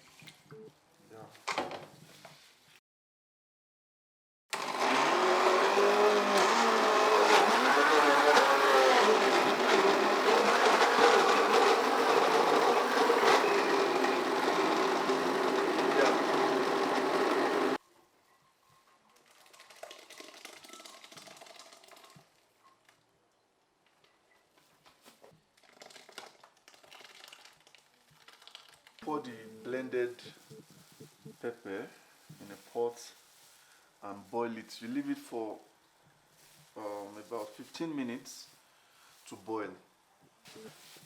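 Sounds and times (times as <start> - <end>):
kitchen blender motor running: 4.5 - 17.8.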